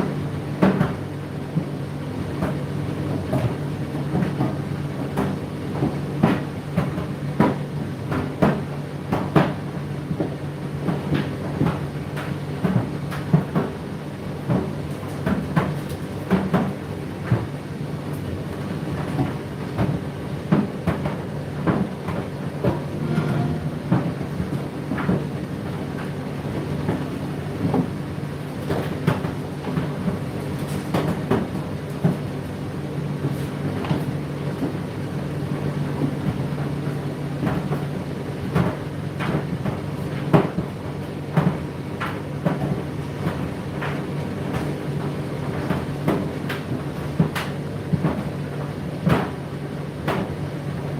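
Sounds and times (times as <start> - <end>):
dryer motor hum: 0.1 - 50.9
laundry knocking in drum: 23.6 - 25.5.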